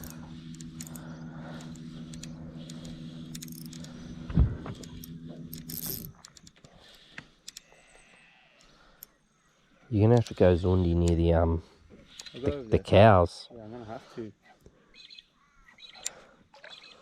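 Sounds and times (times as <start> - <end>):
small metallic clicks and rattles: 0.0 - 7.8, 10.0 - 11.3
motor humming: 0.0 - 8.1.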